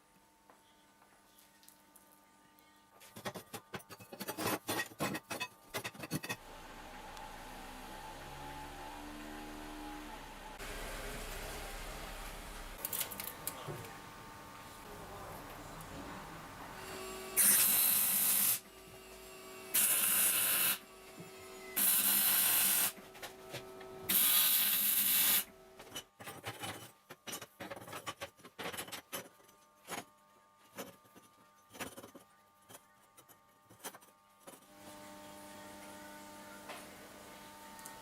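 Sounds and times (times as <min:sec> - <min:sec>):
power tool working metal: 0:06.4 - 0:14.5, 0:16.6 - 0:25.5.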